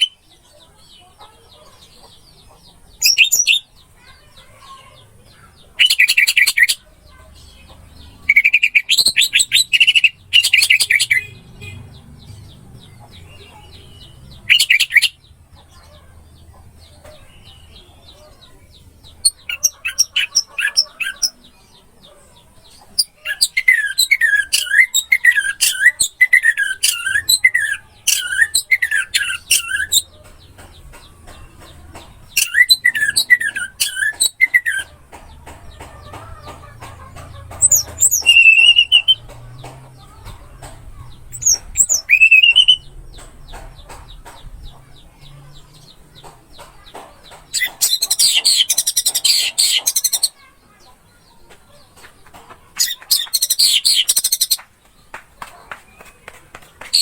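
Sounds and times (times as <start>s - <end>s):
thrush singing: 22.8s - 50.5s.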